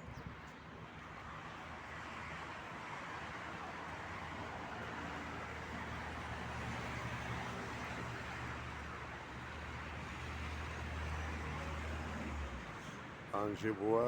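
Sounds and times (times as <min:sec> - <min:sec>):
road noise: 0:00.0 - 0:14.0.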